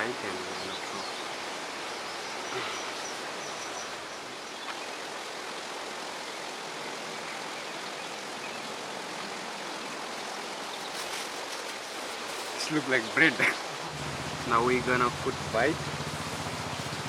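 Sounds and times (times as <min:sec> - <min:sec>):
river water flowing over stones: 0:00.0 - 0:17.0.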